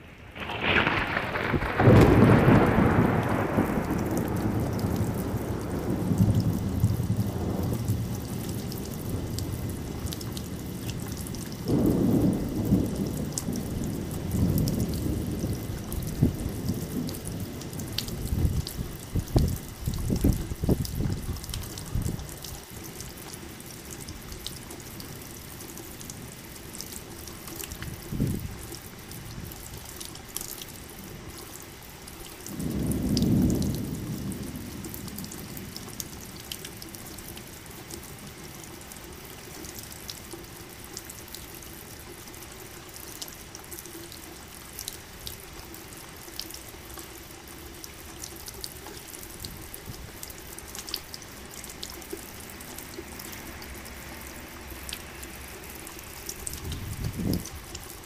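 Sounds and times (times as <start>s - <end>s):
thunder rumbling: 0.0s - 22.7s, 27.3s - 29.6s, 32.5s - 37.3s, 53.2s - 58.0s
rain pattering: 0.0s - 58.0s.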